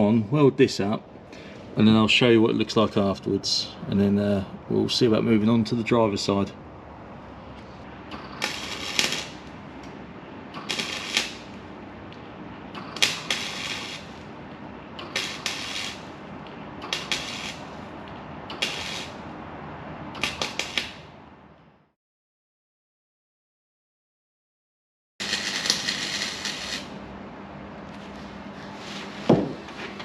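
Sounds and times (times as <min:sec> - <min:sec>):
welder crackling bursts: 0:08.1 - 0:09.6, 0:10.5 - 0:11.7, 0:12.7 - 0:14.4, 0:15.0 - 0:16.2, 0:16.8 - 0:19.3, 0:20.1 - 0:21.1, 0:25.2 - 0:27.0.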